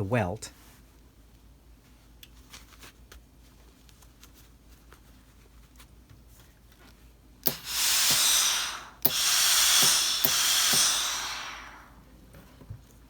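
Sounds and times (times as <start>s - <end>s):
sharp clicks: 7.4s - 11.9s
steam iron hissing: 7.4s - 12.0s.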